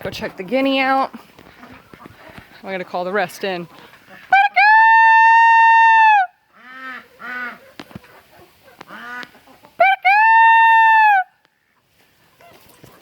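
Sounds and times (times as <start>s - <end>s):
chickens clucking: 0.0s - 4.6s, 6.5s - 9.8s, 11.6s - 13.0s.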